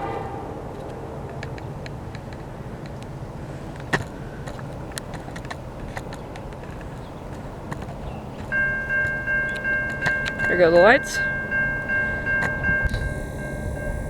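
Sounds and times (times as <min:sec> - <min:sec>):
railroad crossing bell ringing: 0:00.0 - 0:03.8, 0:08.0 - 0:14.0
low outdoor rumble: 0:00.0 - 0:14.0.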